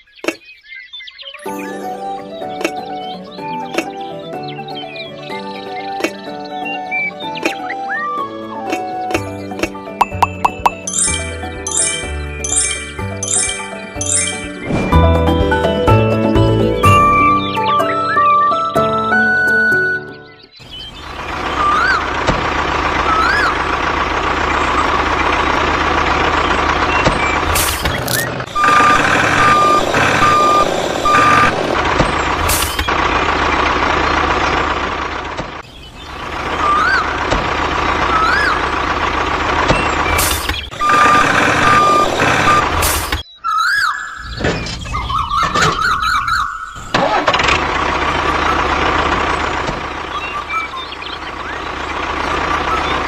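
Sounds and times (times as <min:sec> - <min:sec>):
truck engine running: 0:09.2 - 0:17.3, 0:20.6 - 0:43.2, 0:46.8 - 0:53.0
reversing alarm beeping: 0:28.5 - 0:31.8, 0:40.7 - 0:43.2.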